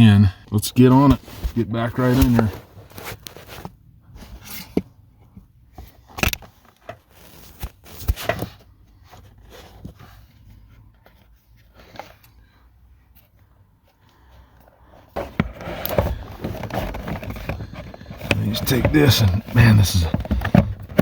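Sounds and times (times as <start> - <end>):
plastic housing knocks and scrapes: 15.2 - 21.0.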